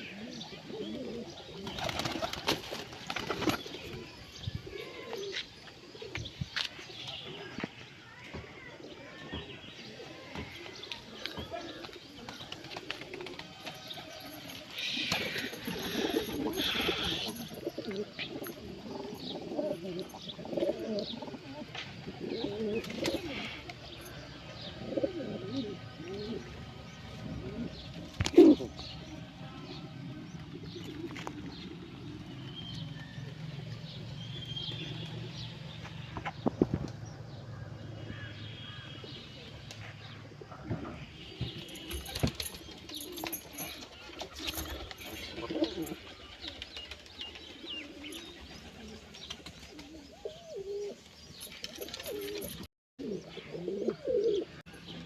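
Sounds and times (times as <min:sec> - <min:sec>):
pigeons cooing: 0:00.0 - 0:06.3, 0:11.3 - 0:29.1, 0:30.3 - 0:32.4, 0:40.2 - 0:54.7.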